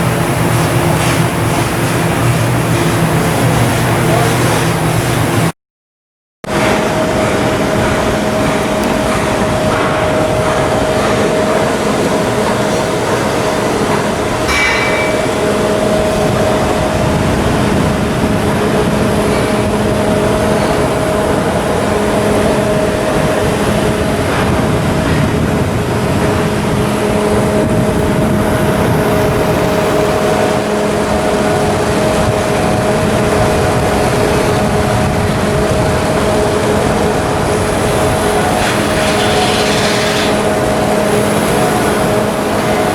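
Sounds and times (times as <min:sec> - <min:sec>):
diesel engine humming: 0:06.5 - 0:42.9
metallic clank: 0:14.5 - 0:15.5, 0:38.3 - 0:40.6.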